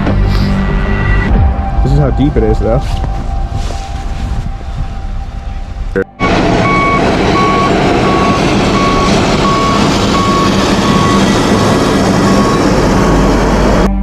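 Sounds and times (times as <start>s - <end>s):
diesel engine running: 3.2s - 14.0s
vehicle back-up alarm beeping: 6.2s - 13.9s.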